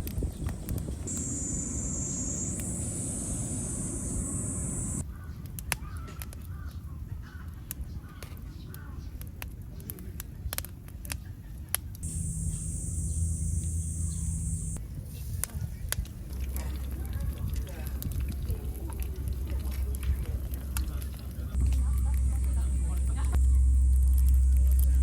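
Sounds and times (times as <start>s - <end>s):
low rumble: 0.0s - 5.0s, 12.0s - 14.8s, 16.2s - 25.0s
high steady buzz: 0.8s - 5.0s, 12.0s - 14.8s, 21.6s - 25.0s.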